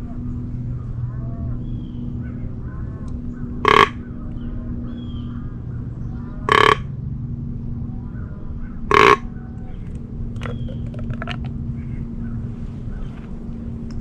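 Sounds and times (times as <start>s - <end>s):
steady low hum: 0.0s - 14.0s
crow cawing: 3.6s - 4.1s, 6.5s - 6.8s, 8.6s - 9.3s.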